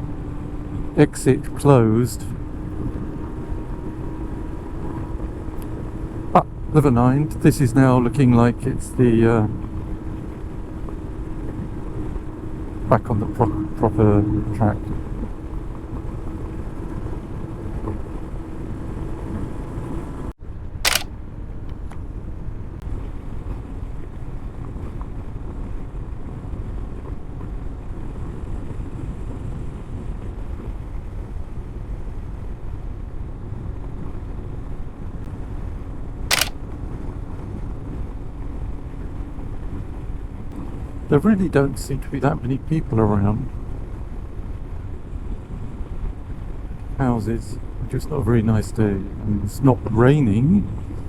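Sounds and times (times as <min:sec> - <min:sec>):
sharp click: 0:20.9 - 0:21.1, 0:36.3 - 0:36.6.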